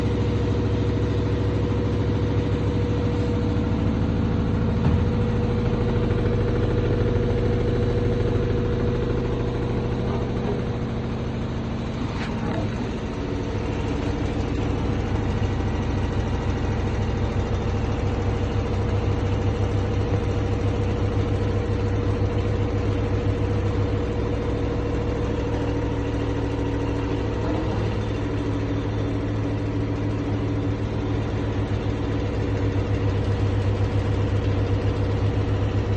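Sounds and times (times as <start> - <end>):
washing machine humming: 0.0 - 35.9.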